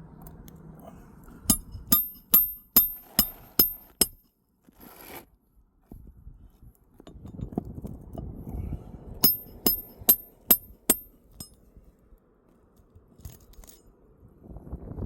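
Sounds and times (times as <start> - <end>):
metal tools clinking: 1.5 - 4.2, 9.2 - 11.6.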